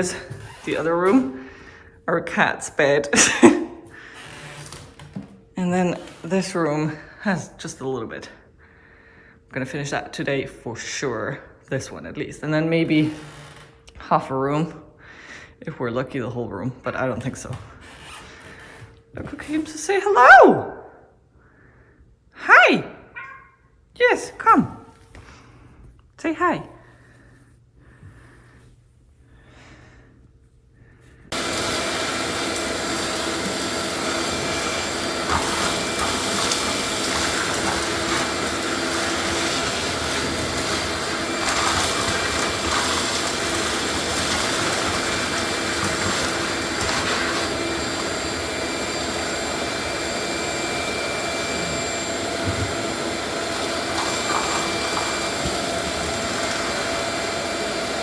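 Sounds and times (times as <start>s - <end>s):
loud motor whine: 31.4s - 58.0s.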